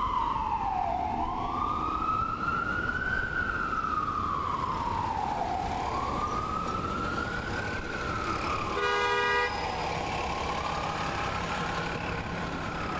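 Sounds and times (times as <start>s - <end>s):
ambulance siren wailing: 0.0s - 8.8s, 9.7s - 12.9s
street traffic rumble: 0.0s - 12.9s.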